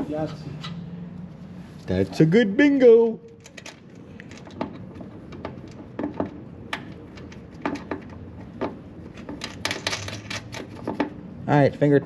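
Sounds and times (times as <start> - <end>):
small tools clicking and knocking: 3.2 - 11.2.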